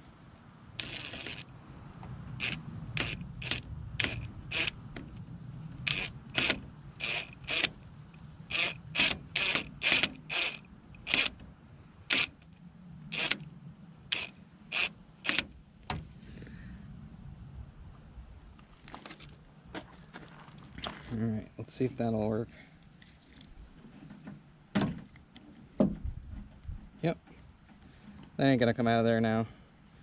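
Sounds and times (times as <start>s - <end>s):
screw being driven by hand: 0.8s - 1.4s, 2.4s - 4.8s, 5.8s - 7.8s, 8.5s - 11.4s, 12.1s - 12.4s, 13.1s - 13.4s, 14.1s - 15.5s.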